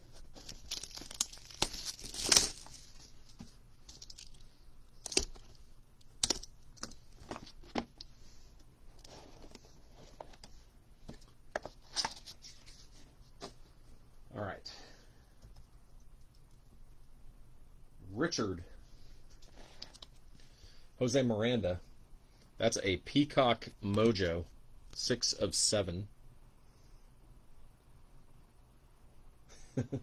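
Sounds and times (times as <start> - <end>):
packaging tearing and crinkling: 0.2 - 7.7.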